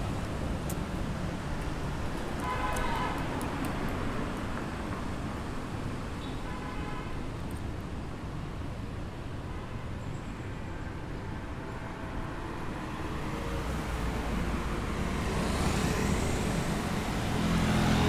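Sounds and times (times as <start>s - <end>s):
rumble of cars and motorbikes: 0.0s - 18.0s
vehicle approaching: 12.9s - 18.0s.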